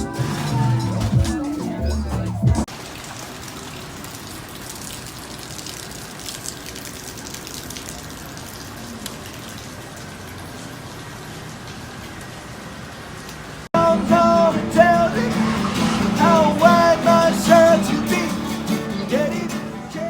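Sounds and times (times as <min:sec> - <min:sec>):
rushing water: 0:00.0 - 0:02.0, 0:02.6 - 0:20.0
music: 0:00.0 - 0:02.7, 0:13.8 - 0:20.0.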